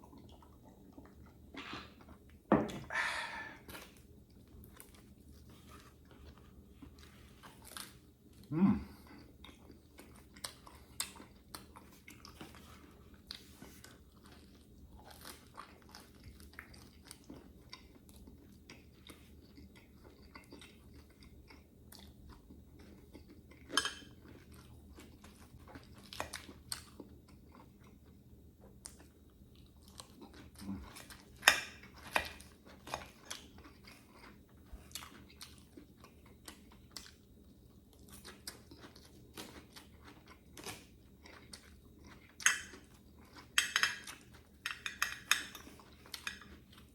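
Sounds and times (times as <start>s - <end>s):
person chewing and crunching food: 0.0s - 46.9s.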